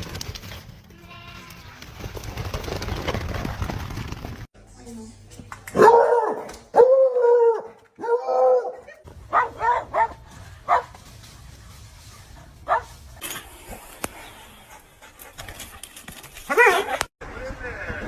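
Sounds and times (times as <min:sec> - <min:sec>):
dog yipping: 0:05.8 - 0:10.9.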